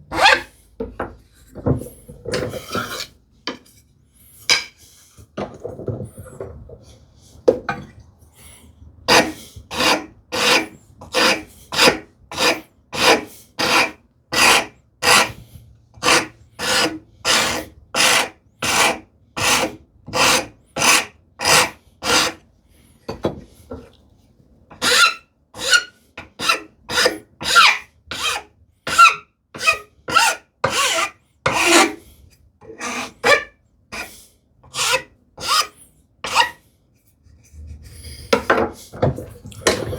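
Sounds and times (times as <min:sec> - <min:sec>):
hand file rasping on wood: 0:00.1 - 0:00.5, 0:09.1 - 0:15.4, 0:16.0 - 0:22.4, 0:24.7 - 0:32.0, 0:32.8 - 0:34.1, 0:34.7 - 0:36.6.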